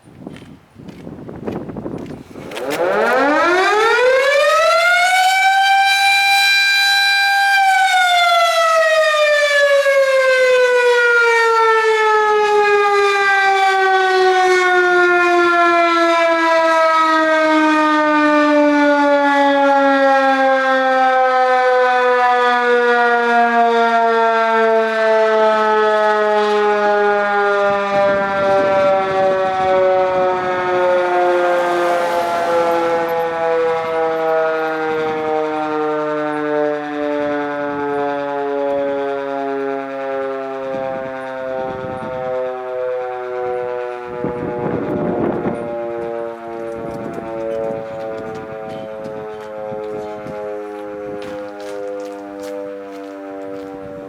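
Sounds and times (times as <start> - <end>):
fire siren wailing: 1.8 - 54.0.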